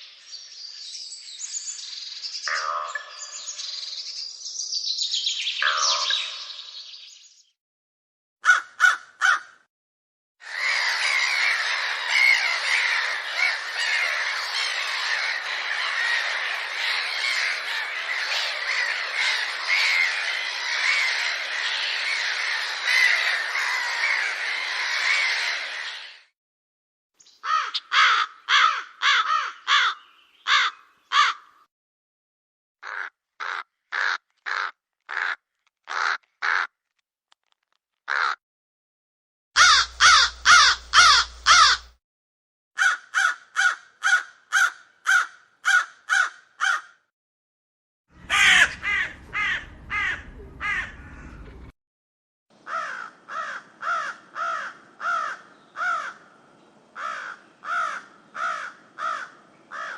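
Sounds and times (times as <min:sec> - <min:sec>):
crows cawing: 0:02.5 - 0:03.2, 0:05.6 - 0:06.3, 0:08.4 - 0:09.7, 0:10.4 - 0:26.3, 0:27.4 - 0:31.7, 0:32.8 - 0:36.7, 0:38.1 - 0:38.4, 0:39.6 - 0:41.9, 0:42.8 - 0:47.1, 0:48.2 - 0:51.5, 0:52.6 - 0:59.9.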